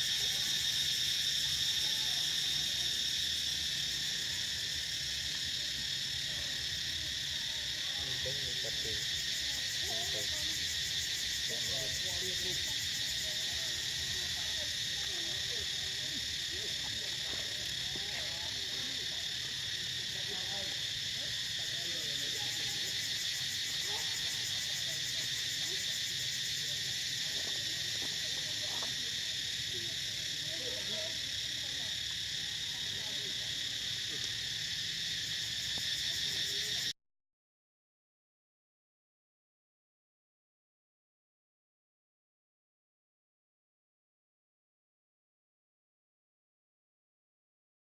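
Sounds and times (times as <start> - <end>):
insect chorus drone: 0.0 - 37.0.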